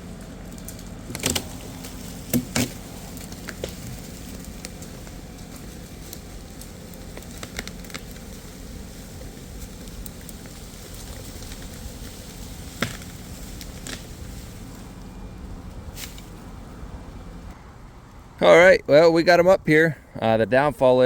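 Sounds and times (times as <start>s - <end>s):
low rumble: 0.0s - 18.4s.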